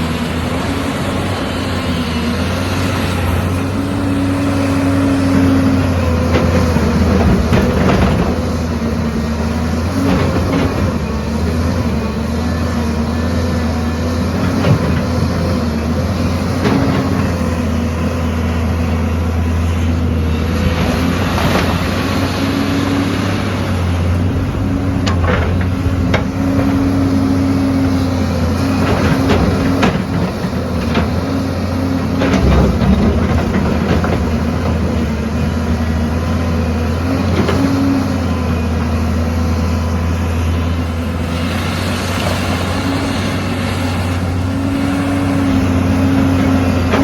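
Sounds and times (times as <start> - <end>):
diesel machine engine running: 0.0 - 47.0
knocks and clanks: 24.9 - 26.9.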